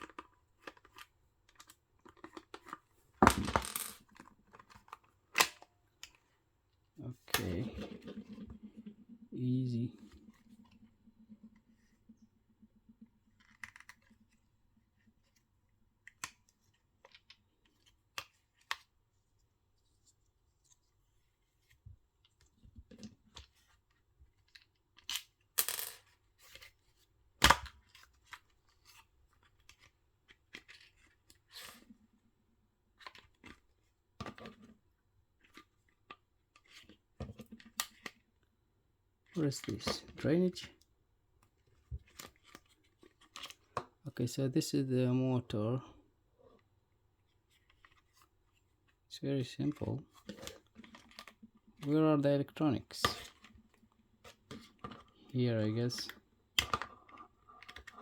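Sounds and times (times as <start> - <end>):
plastic parts clicking and scraping: 0.0 - 6.3, 13.3 - 14.4, 35.4 - 38.3, 39.2 - 44.0, 49.6 - 51.9, 55.8 - 58.0.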